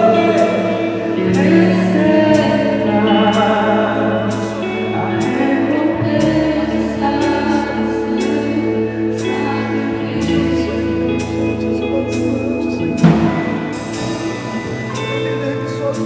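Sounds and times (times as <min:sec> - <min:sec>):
people singing: 0:00.0 - 0:12.0
bass: 0:00.0 - 0:16.0
keyboard chords: 0:00.0 - 0:16.0.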